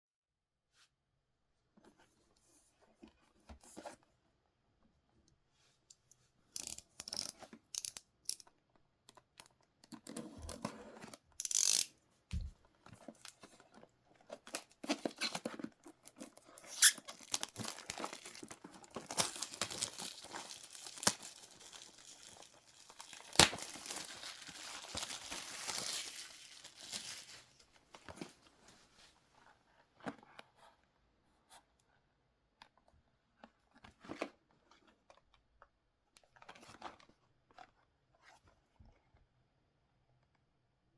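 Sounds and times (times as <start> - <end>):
packaging tearing and crinkling: 16.1 - 27.6.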